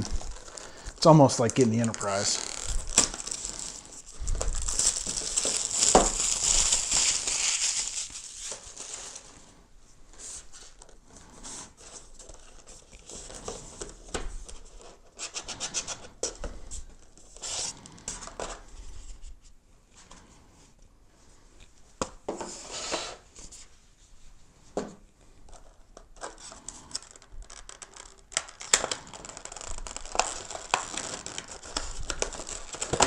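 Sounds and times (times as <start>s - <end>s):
cardboard and plastic rustling: 0.0s - 9.6s, 25.5s - 33.0s.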